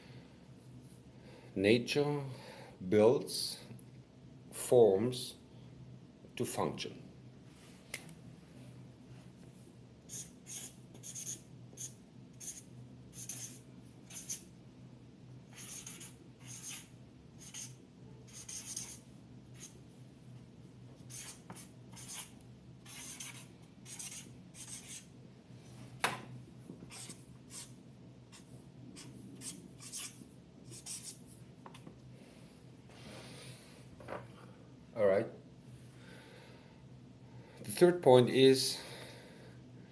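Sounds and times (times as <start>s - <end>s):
faint room hum: 0.0s - 39.9s
pen scratching while writing: 10.1s - 12.6s, 13.2s - 14.4s, 15.5s - 19.0s, 21.1s - 25.0s, 26.9s - 27.7s, 29.0s - 31.2s.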